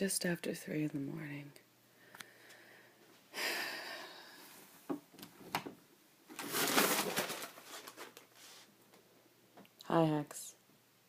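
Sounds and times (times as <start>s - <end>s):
plastic bags rustling: 6.3s - 8.7s.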